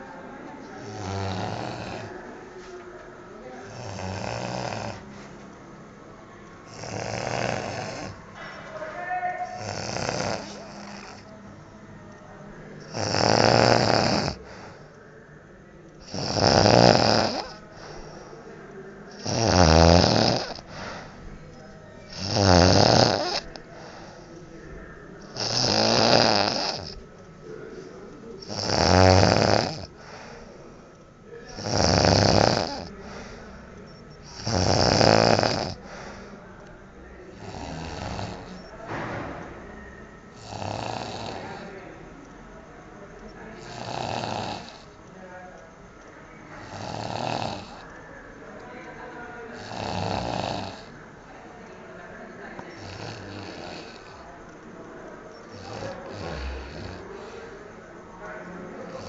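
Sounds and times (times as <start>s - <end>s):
man snoring loudly: 0.8s - 2.2s, 3.7s - 5.1s, 6.7s - 8.2s, 9.5s - 11.3s, 12.8s - 14.7s, 16.0s - 18.0s, 19.1s - 20.9s, 22.1s - 24.0s, 25.2s - 27.0s, 28.4s - 30.2s, 31.5s - 33.3s, 34.2s - 36.2s, 37.3s - 38.7s, 40.4s - 41.7s, 43.6s - 44.9s, 46.6s - 47.8s, 49.6s - 50.9s, 52.7s - 54.2s, 55.5s - 57.5s.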